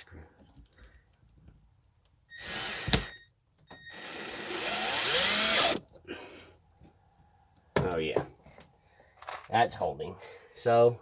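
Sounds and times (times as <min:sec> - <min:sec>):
cordless drill driving screw: 0:02.3 - 0:05.9.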